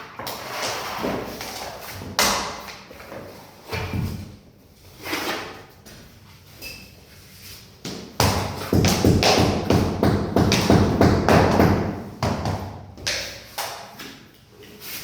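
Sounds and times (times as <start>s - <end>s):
mallet knocking flooring planks: 8.2s - 13.2s.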